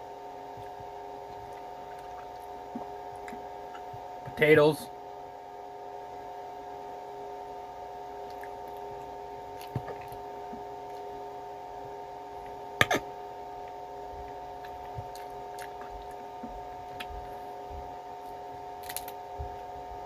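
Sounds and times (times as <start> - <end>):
electrical hum: 0.0 - 20.0
quiet eating noises: 0.4 - 4.4, 8.2 - 19.7.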